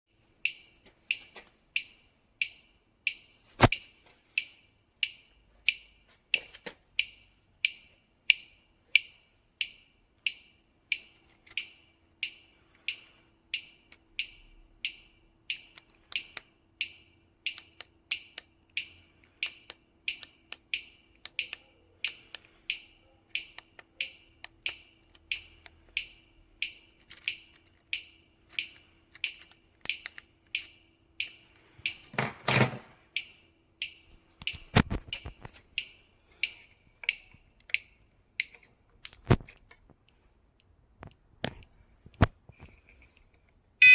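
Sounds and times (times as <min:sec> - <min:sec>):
sharp clicks: 0:00.4 - 0:03.8.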